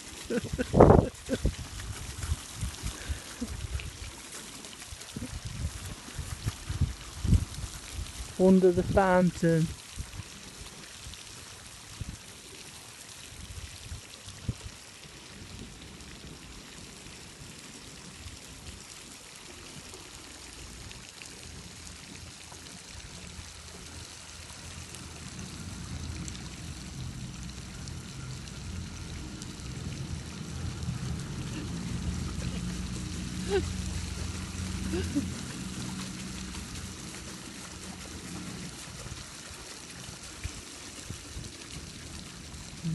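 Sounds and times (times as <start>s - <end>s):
fountain water splashing: 0.0s - 42.9s
low rumble: 24.4s - 38.2s.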